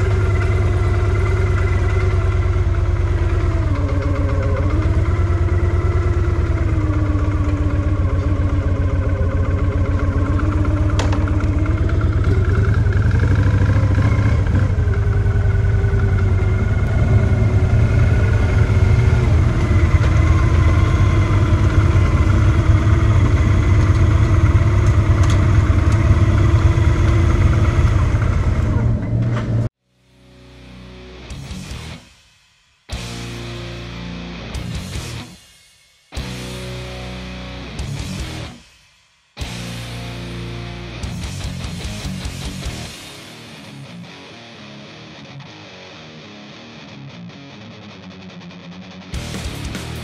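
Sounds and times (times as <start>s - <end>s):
motorcycle engine running: 0.0s - 29.8s, 32.9s - 35.4s, 36.2s - 38.6s, 39.4s - 43.9s, 49.2s - 50.0s.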